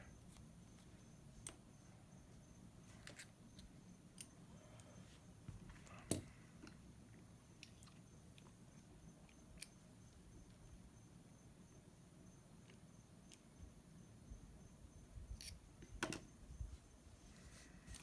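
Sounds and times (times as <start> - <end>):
small parts clicking and tapping: 0.2 - 1.6, 3.0 - 5.0, 5.8 - 6.8, 7.6 - 10.7.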